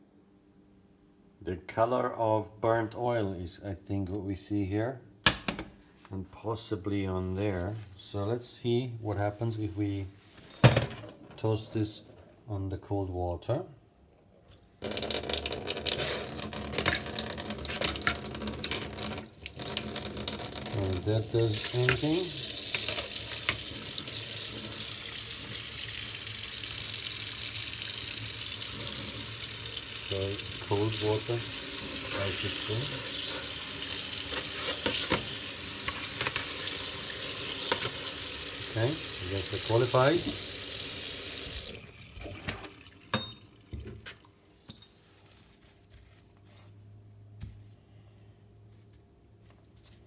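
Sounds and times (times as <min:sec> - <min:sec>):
tap water running over metal: 0:14.8 - 0:44.3.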